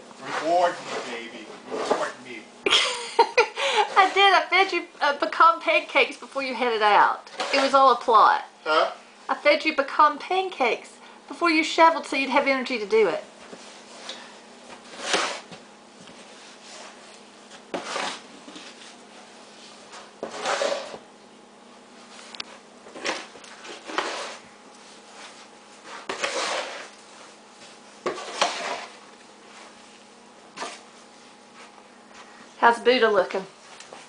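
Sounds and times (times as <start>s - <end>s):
snow shovel scraping: 0.2s - 2.2s, 7.3s - 7.8s, 14.9s - 15.5s, 17.7s - 18.2s, 20.2s - 21.0s, 23.0s - 24.4s, 25.9s - 26.9s, 28.0s - 29.0s.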